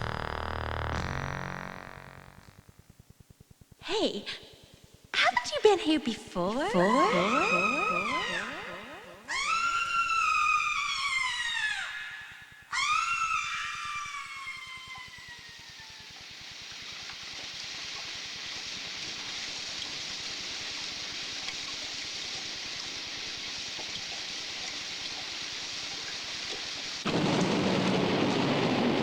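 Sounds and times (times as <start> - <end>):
rain hiss: 13.6 - 29.0.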